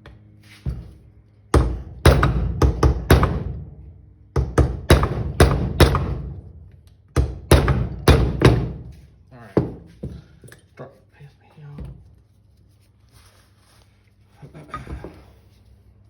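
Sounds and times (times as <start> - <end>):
hammer striking metal pin: 1.5 - 3.7, 4.4 - 6.5, 7.1 - 9.0.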